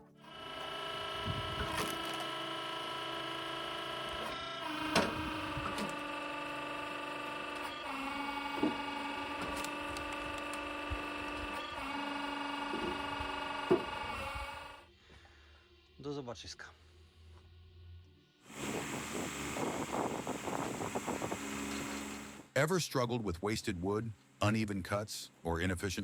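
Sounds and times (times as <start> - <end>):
tractor engine running: 0.0 - 14.8, 18.5 - 22.5
wood splitting cracks: 1.6 - 2.4.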